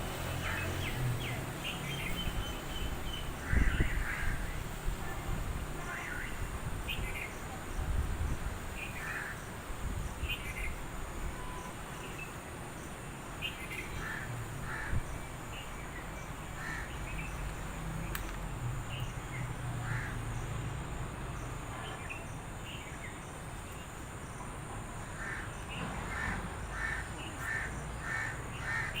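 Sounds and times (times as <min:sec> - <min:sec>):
birds calling: 0:11.4 - 0:20.6, 0:25.1 - 0:29.0.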